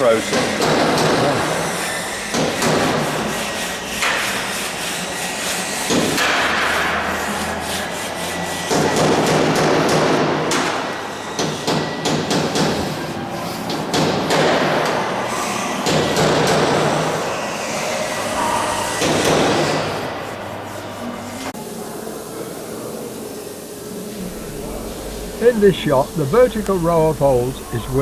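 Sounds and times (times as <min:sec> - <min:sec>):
hammer knocking on sheet metal: 0:00.3 - 0:01.5
loud rasping rubbing noise: 0:00.6 - 0:10.3, 0:24.2 - 0:28.0.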